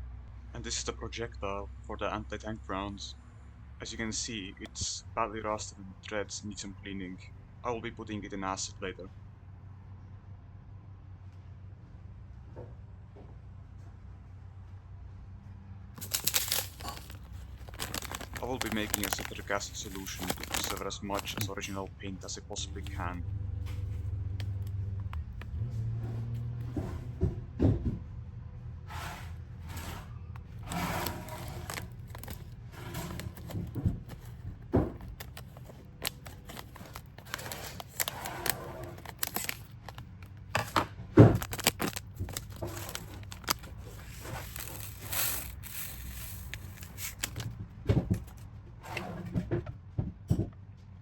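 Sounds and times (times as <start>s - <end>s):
packaging scraping and crinkling: 16.0s - 25.6s, 29.6s - 47.6s.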